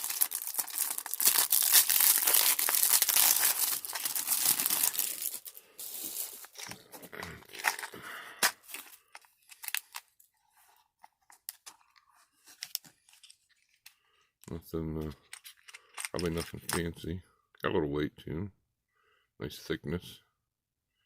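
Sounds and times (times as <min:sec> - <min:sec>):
packaging tearing and crinkling: 0:00.0 - 0:10.1.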